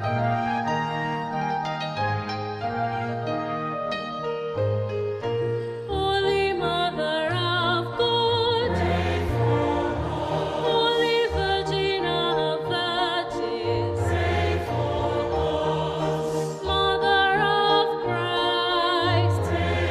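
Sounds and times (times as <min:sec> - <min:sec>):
choir singing slow notes: 0:08.6 - 0:18.2, 0:18.8 - 0:19.9.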